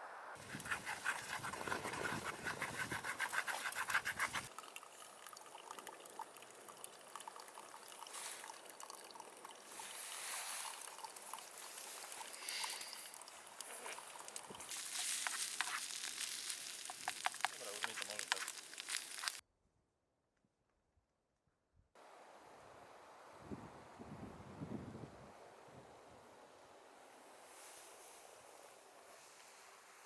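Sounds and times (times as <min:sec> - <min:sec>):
liquid pouring with glugs: 0:00.5 - 0:19.3
light crackling: 0:08.5 - 0:19.4.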